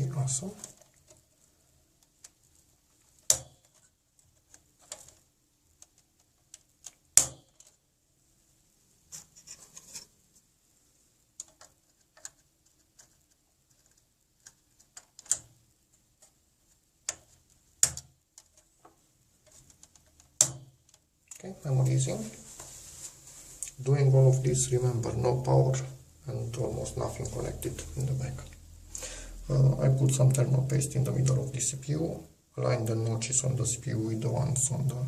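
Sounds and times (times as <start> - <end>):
scraping and small ticks: 0.4 - 7.8, 9.1 - 10.5, 11.4 - 21.5.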